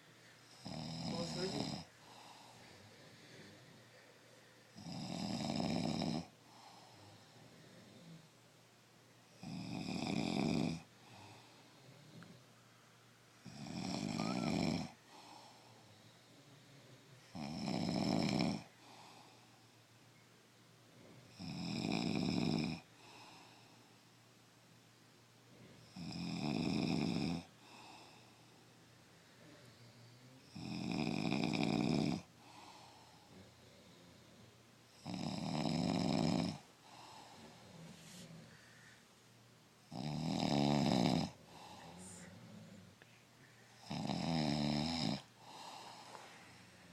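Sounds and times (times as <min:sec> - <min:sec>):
person snoring loudly: 0:00.5 - 0:01.9, 0:04.8 - 0:06.3, 0:09.4 - 0:10.9, 0:13.4 - 0:15.0, 0:17.3 - 0:18.7, 0:21.3 - 0:22.8, 0:25.9 - 0:27.8, 0:30.2 - 0:32.3, 0:35.0 - 0:37.0, 0:39.9 - 0:42.8, 0:43.8 - 0:46.1.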